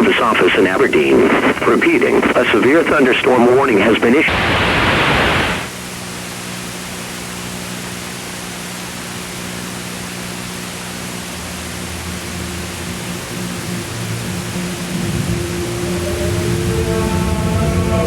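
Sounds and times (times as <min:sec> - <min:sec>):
burst of noise: 0:00.0 - 0:05.7
static hiss: 0:00.0 - 0:18.0.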